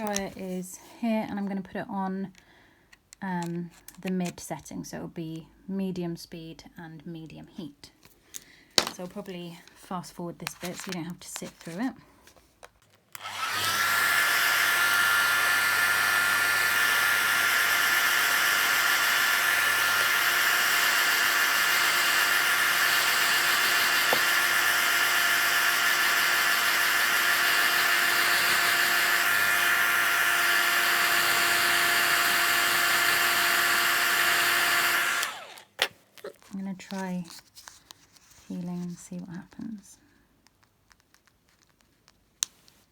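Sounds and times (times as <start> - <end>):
hairdryer whine and air rush: 13.2 - 35.7.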